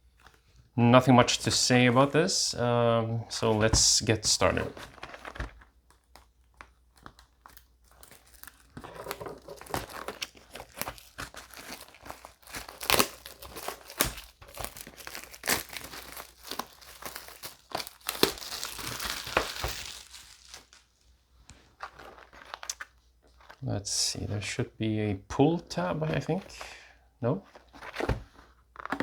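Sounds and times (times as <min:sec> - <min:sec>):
plastic shrink wrap crinkling: 0:03.3 - 0:23.6.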